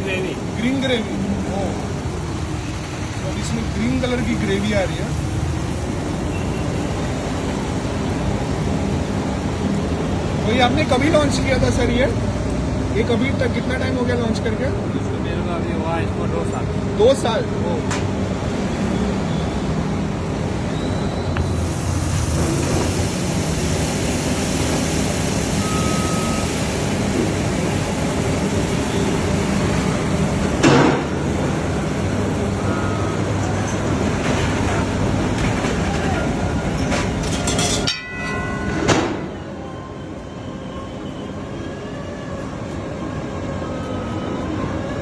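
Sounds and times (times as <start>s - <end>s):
street noise hum: 0.0s - 45.0s
food sizzling in oil: 21.4s - 30.4s.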